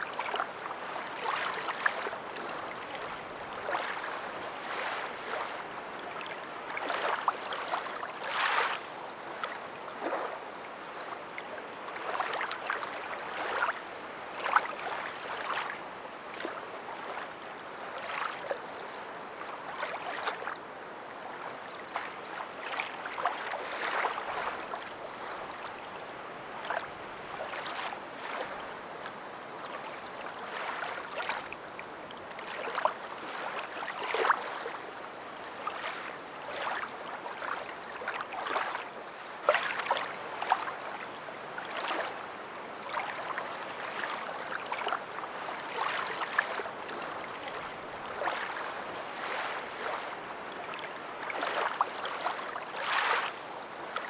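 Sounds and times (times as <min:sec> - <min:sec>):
water sloshing and splashing: 0:42.8 - 0:54.0.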